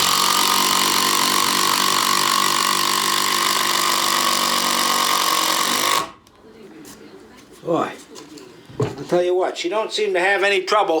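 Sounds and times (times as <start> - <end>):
impact driver hammering: 0.0 - 6.2.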